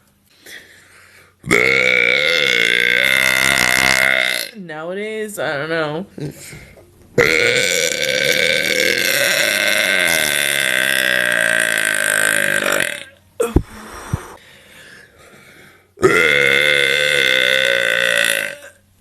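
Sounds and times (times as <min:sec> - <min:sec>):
woman burping loudly: 0:01.4 - 0:04.6, 0:07.2 - 0:13.8, 0:16.0 - 0:18.8.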